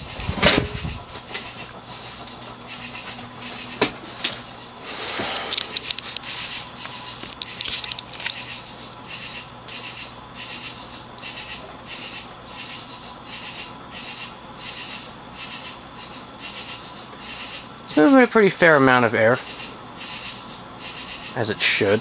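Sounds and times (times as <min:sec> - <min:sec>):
ceiling fan whooshing: 0:00.0 - 0:22.0
fan motor hum: 0:00.0 - 0:22.0
sharp clicks: 0:05.5 - 0:08.4.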